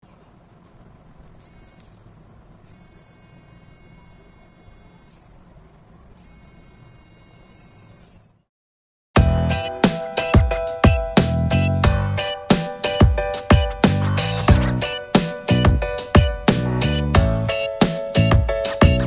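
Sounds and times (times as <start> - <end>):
small motor high-pitched whine: 1.4 - 8.5.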